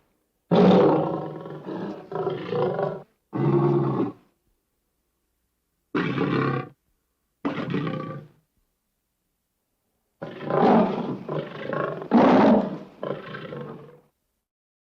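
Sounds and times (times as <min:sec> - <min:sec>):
lion roaring: 0:00.5 - 0:04.2, 0:06.0 - 0:06.8, 0:07.4 - 0:08.4, 0:10.2 - 0:14.1.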